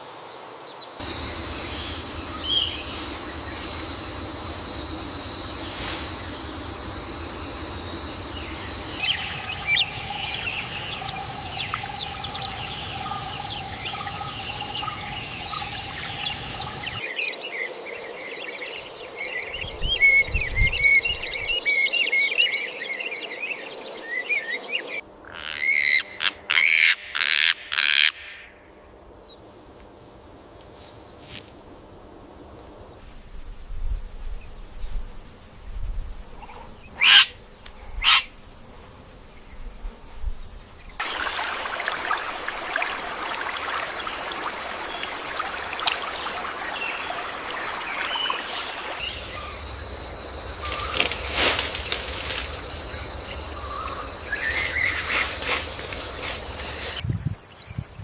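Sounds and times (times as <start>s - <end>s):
high insect drone: 0.0s - 58.0s
small birds chirping: 44.7s - 58.0s.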